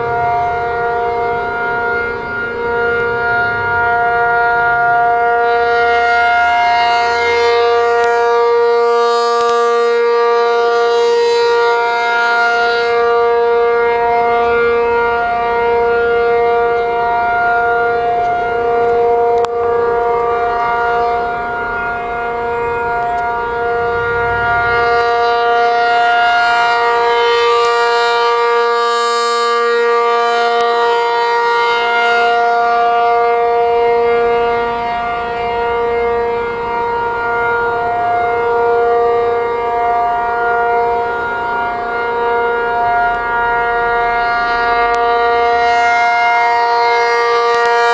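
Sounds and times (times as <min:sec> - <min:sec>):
rotating warning siren steady tone: 0:00.0 - 0:47.9.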